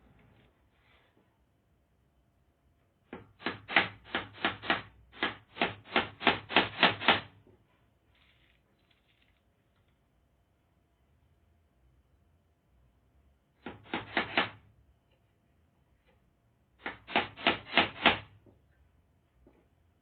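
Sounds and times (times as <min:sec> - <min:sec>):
hammer striking nail: 0:03.1 - 0:07.3, 0:13.6 - 0:14.6, 0:16.8 - 0:18.3.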